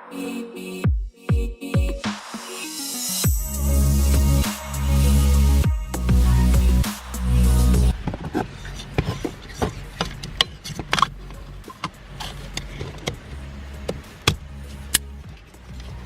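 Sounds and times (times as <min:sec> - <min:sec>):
electronic music: 0:02.0 - 0:08.3.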